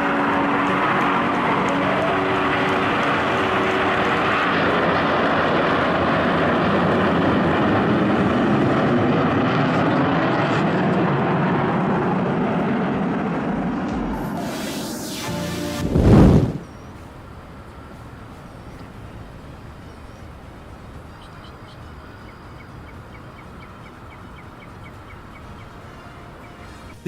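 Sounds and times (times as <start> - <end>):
jet engine rush: 0.0 - 21.2.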